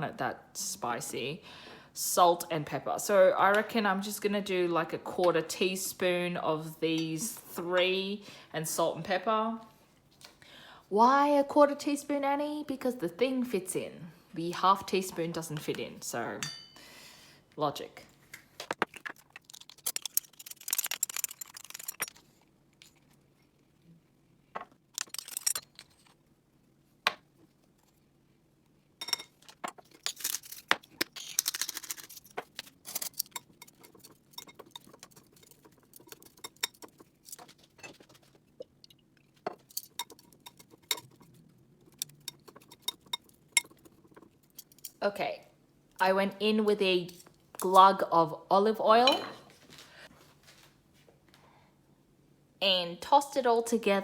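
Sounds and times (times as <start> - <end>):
measuring spoons and jars clinking: 16.4 - 16.8, 19.5 - 22.2, 25.0 - 26.0, 29.0 - 29.6, 32.8 - 38.0, 39.5 - 41.3, 41.9 - 45.0, 49.0 - 49.4.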